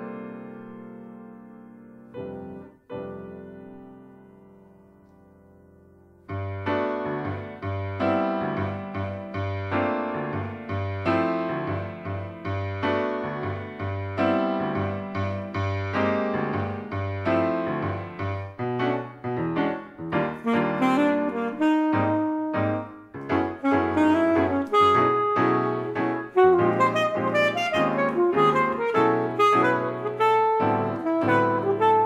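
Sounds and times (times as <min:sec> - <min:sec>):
piano chords and bass: 0:00.0 - 0:32.0
alto saxophone melody: 0:20.1 - 0:32.0.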